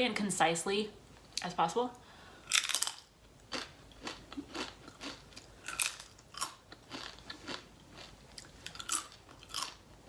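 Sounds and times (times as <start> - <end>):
chewing crunchy food: 2.5 - 9.8.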